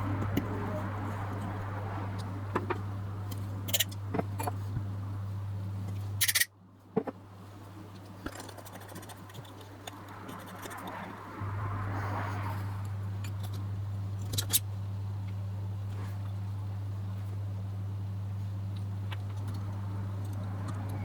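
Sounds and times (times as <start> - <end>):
low electrical hum: 0.0 - 21.0
small metal parts clicking: 3.3 - 4.5, 6.2 - 6.5, 14.2 - 14.6.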